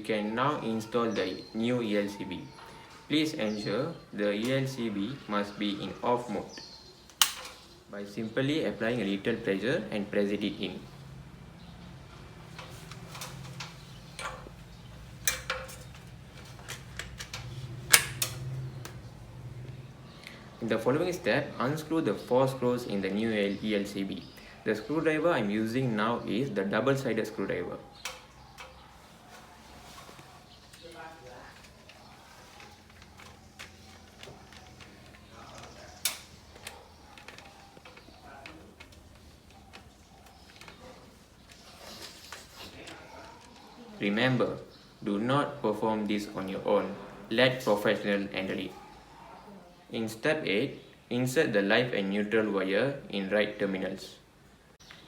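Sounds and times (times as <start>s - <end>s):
screwdriver clicking on screws: 7.1s - 7.7s.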